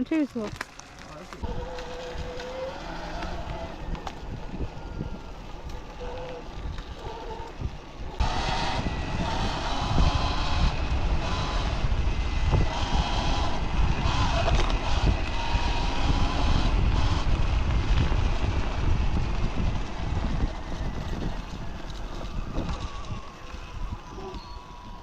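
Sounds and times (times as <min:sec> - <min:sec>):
tyres on ground: 0:00.0 - 0:08.4
wind rumble on microphone: 0:00.0 - 0:25.0
electric motor whine: 0:01.4 - 0:25.0.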